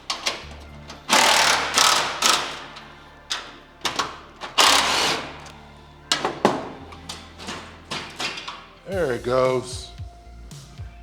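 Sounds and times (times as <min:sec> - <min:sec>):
power driver running in bolts: 0:00.0 - 0:09.4
background music with bass: 0:00.0 - 0:11.0.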